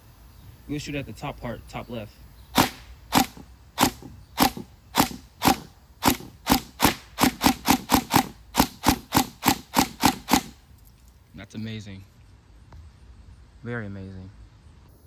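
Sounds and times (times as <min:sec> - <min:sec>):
airsoft gun shots: 0:02.5 - 0:10.6.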